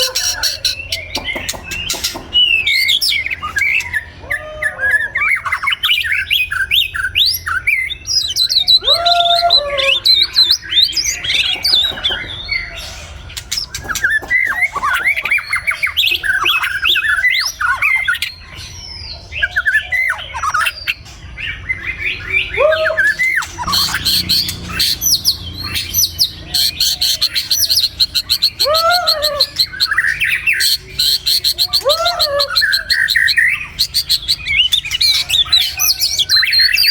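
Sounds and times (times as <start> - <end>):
harsh squawk-like calls: 0.0 - 36.9.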